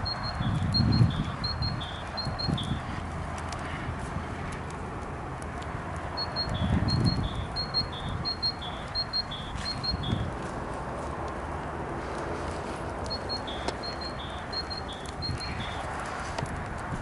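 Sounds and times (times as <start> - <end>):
steady outdoor hiss: 0.0 - 17.0
faint crackles: 8.8 - 17.0.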